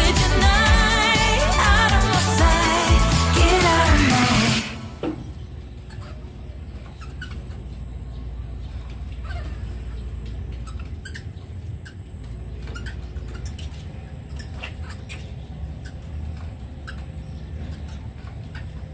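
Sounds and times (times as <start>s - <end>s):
animal squeaks and chirps: 10.6s - 18.9s.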